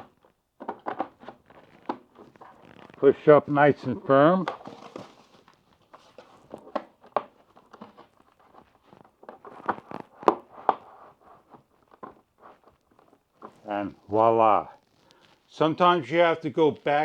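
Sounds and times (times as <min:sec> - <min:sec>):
plastic clicking and scraping on bracket: 0:00.0 - 0:03.1, 0:04.3 - 0:13.7.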